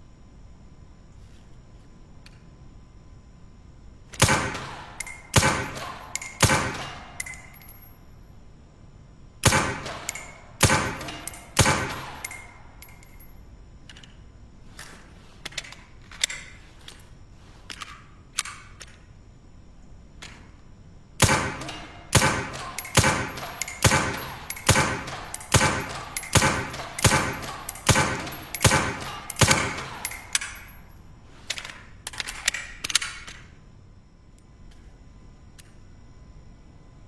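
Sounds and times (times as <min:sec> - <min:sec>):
suppressed pistol shots: 0:04.1 - 0:07.5, 0:09.4 - 0:12.5, 0:21.2 - 0:30.6.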